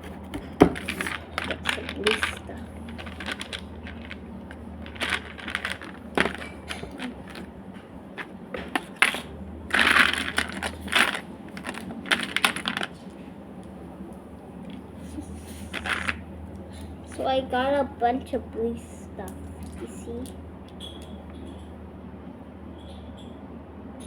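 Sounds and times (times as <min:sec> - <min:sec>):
plastic charms clicking and clattering: 0:00.6 - 0:07.5, 0:08.2 - 0:13.1, 0:15.7 - 0:16.2.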